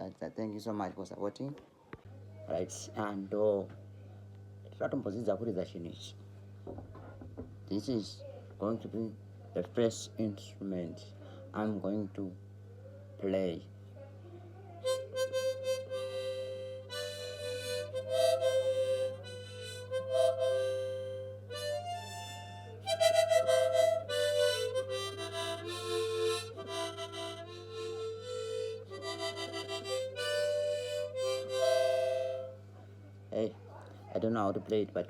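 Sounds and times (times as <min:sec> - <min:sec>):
steady low hum: 0:00.0 - 0:35.0
harmonica notes and chords: 0:14.8 - 0:32.9.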